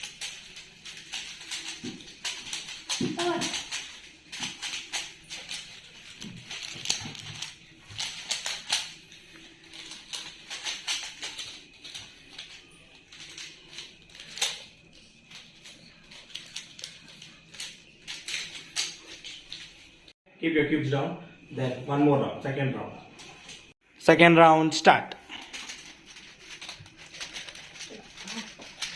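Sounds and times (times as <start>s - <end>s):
plastic puzzle cubes clicking: 0.0s - 8.9s, 9.7s - 14.7s, 15.3s - 19.7s.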